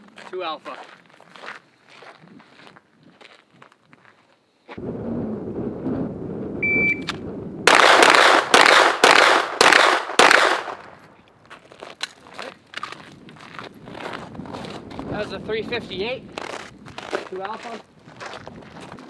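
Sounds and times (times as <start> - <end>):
wind on microphone: 4.8 - 9.1, 12.5 - 19.0
shot timer beep: 6.6 - 7.1
pistol shots echoing: 7.7 - 11.1.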